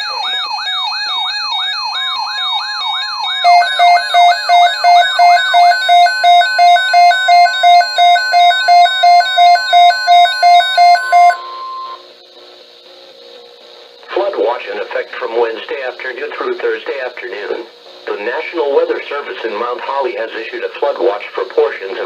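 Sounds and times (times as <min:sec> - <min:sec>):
electronic siren yelping: 0:00.0 - 0:12.0
two-tone beeping alarm: 0:00.0 - 0:12.0
steady single tone: 0:10.8 - 0:12.0
faint radio hiss: 0:12.0 - 0:22.0.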